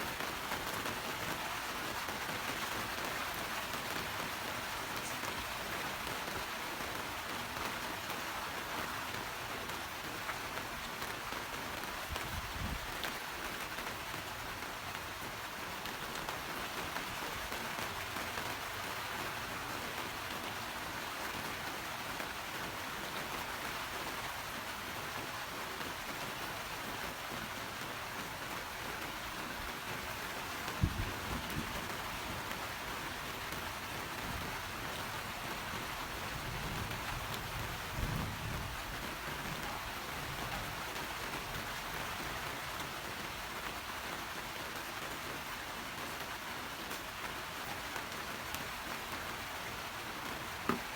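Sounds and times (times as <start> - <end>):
steady rain pattering: 0.0 - 50.9.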